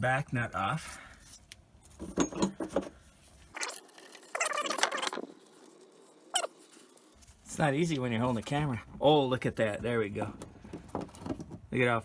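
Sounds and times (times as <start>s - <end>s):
metal tools clinking: 1.9s - 2.8s, 3.6s - 7.2s
short squeak: 6.3s - 6.6s.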